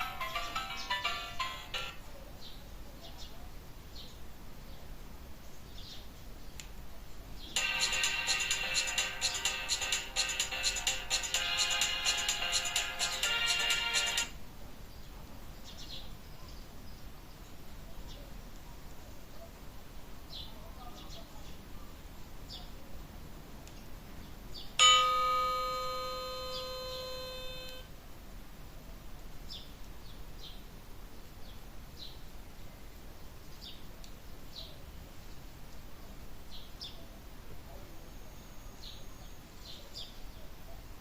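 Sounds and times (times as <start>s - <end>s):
bell-like phone ringtone: 0.0s - 2.0s, 7.6s - 14.3s, 24.8s - 27.9s
short high chirps: 25.2s - 27.8s.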